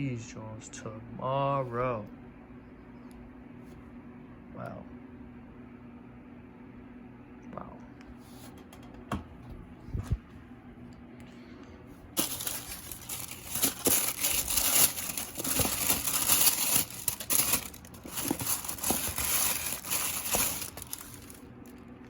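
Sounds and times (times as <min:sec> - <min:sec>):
packaging crinkling and rustling: 0:12.2 - 0:21.8.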